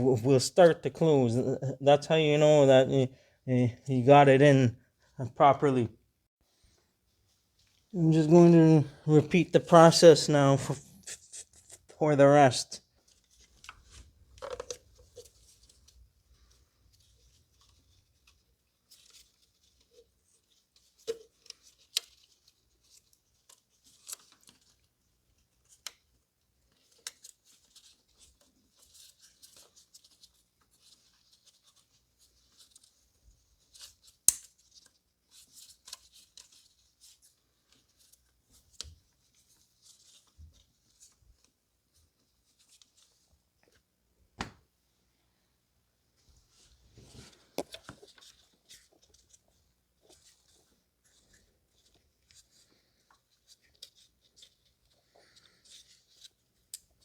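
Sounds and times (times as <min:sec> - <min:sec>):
plastic parts rustling: 0:13.1 - 0:16.0.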